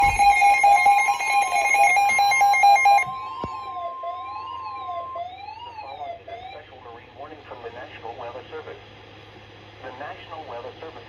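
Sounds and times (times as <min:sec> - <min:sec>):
stepping electronic beeps: 0:00.0 - 0:03.1
siren-like sweeping tone: 0:00.0 - 0:06.6
steady alarm tone: 0:00.0 - 0:06.6.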